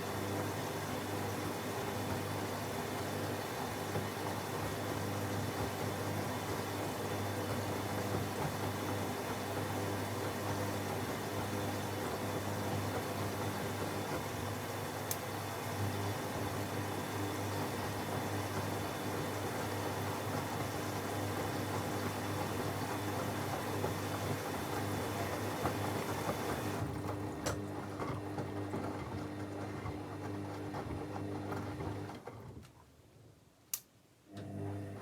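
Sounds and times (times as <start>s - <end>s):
washing machine humming: 0.0s - 32.5s, 34.4s - 35.0s
sharp click: 33.7s - 33.9s.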